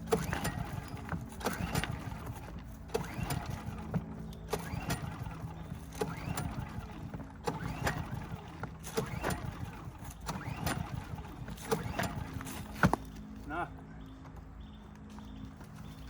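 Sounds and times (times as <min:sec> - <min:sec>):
generator engine cranking: 0:00.0 - 0:13.2
steady low hum: 0:00.0 - 0:16.0.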